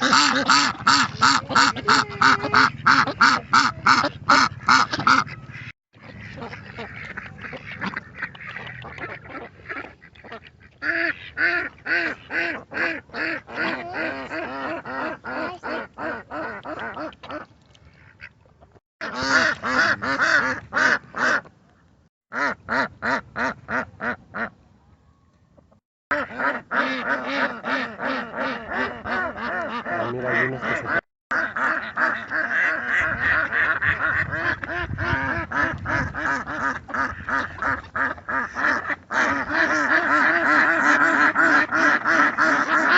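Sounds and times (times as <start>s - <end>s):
ducks quacking: 0.0s - 18.4s, 19.0s - 21.5s, 26.1s - 42.9s.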